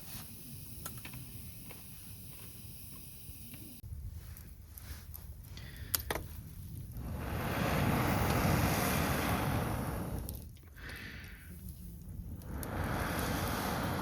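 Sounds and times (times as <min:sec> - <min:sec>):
wind gust on microphone: 0:06.4 - 0:10.5, 0:11.7 - 0:14.0.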